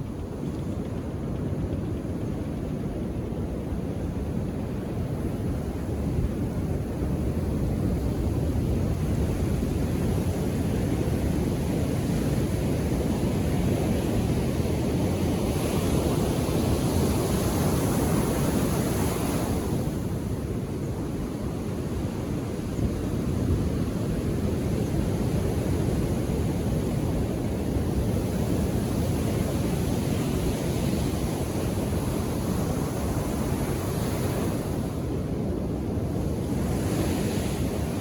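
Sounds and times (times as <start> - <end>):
low rumble of waves: 0.0 - 38.0
wave breaking and washing in: 25.8 - 38.0.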